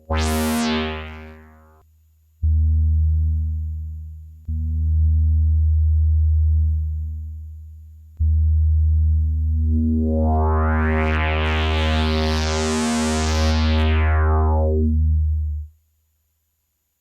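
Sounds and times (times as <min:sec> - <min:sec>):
synthesizer low steady note: 0:00.0 - 0:01.8, 0:08.3 - 0:15.7.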